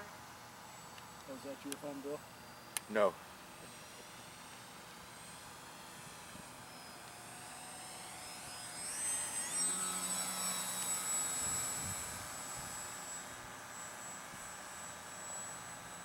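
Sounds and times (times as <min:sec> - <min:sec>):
rc plane motor and propeller: 0:00.0 - 0:16.0.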